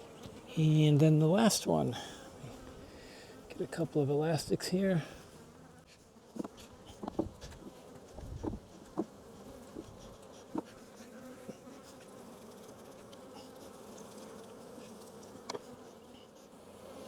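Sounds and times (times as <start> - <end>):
honey bees buzzing: 0.0 - 17.0
light taps on hive frame: 6.4 - 9.1.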